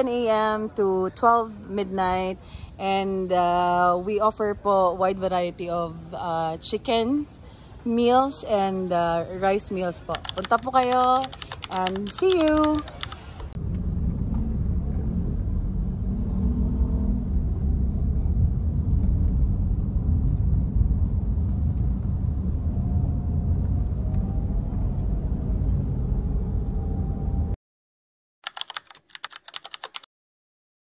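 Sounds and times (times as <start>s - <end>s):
low ambient rumble: 12.6s - 27.6s.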